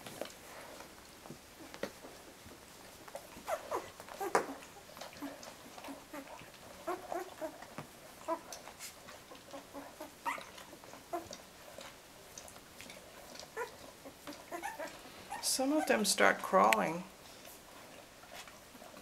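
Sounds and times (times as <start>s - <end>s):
puppies whimpering and squeaking: 3.2s - 11.5s, 13.2s - 16.0s.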